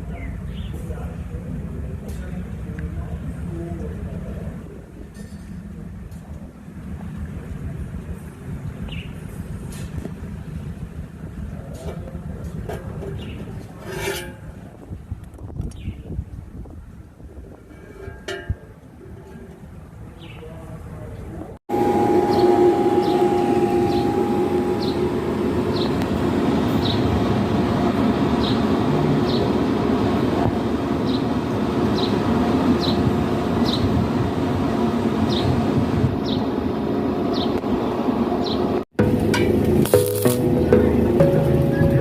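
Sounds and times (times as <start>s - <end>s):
low hum: 21.7s - 33.6s.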